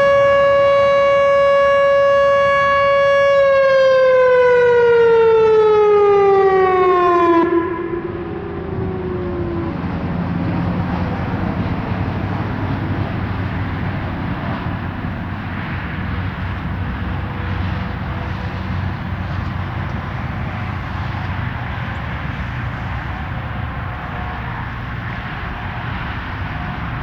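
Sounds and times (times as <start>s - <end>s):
low drone: 0.0s - 27.0s
engine rumble and hiss: 8.2s - 27.0s.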